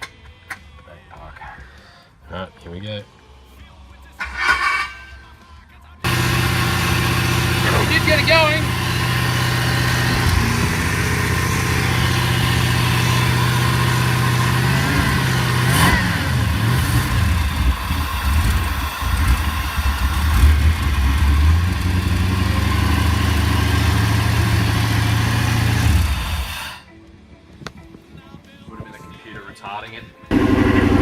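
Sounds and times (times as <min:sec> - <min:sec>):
engine idling unevenly: 0:06.0 - 0:26.8, 0:30.3 - 0:31.0.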